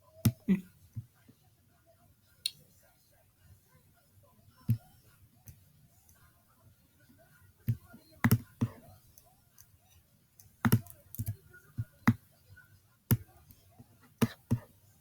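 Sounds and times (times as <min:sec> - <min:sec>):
mouse and keyboard clicks: 0:10.4 - 0:12.2.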